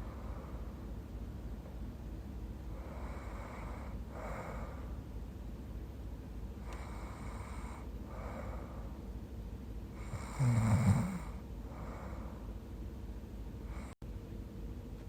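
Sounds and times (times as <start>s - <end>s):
soft breaths: 0.0s - 1.1s, 2.6s - 5.2s, 6.6s - 9.2s, 9.9s - 13.0s, 13.6s - 14.0s
woman snoring: 10.0s - 12.0s.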